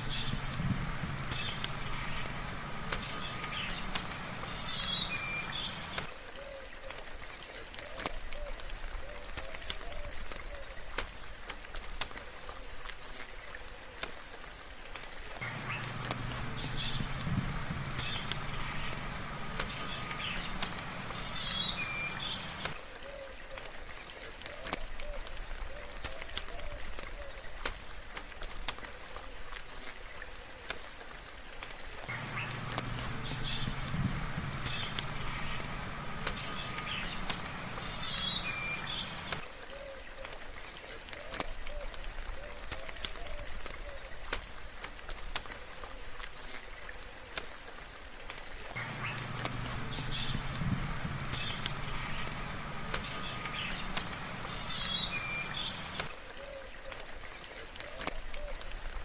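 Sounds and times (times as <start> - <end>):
birds chirping: 0.0 - 6.6, 15.4 - 22.8, 32.0 - 39.8, 48.7 - 56.6
lower bird calls: 0.0 - 7.0, 15.4 - 23.4, 32.1 - 40.1, 48.8 - 56.8
soft rain falling: 0.0 - 59.0.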